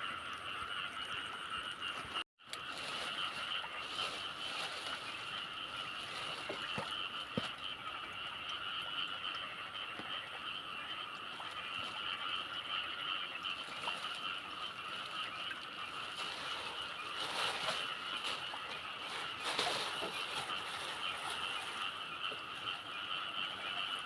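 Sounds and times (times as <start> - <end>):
rustling: 2.6 - 7.5, 15.9 - 22.7
high-pitched trilling animal chorus: 2.6 - 24.0.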